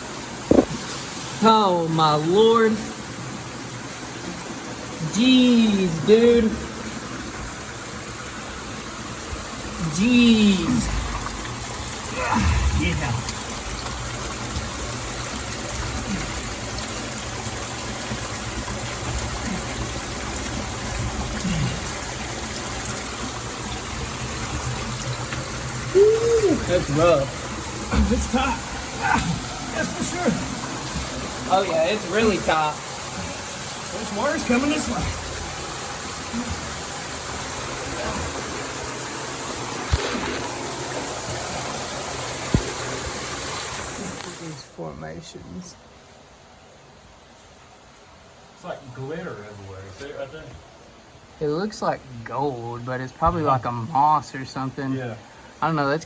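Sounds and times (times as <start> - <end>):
water rushing through cave: 0.0 - 46.2, 47.2 - 56.0
short low thumps: 0.5 - 0.8.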